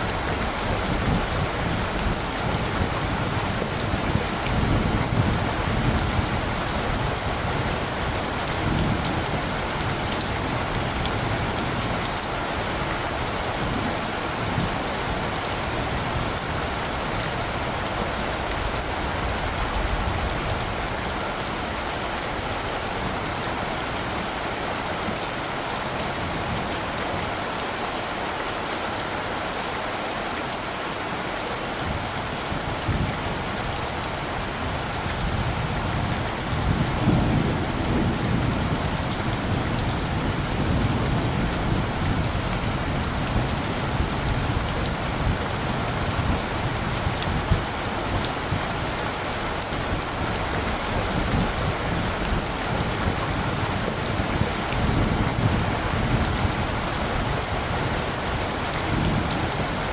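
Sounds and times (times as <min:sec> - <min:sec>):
rain falling: 0:00.0 - 0:59.9
distant thunder rumble: 0:34.5 - 0:48.9.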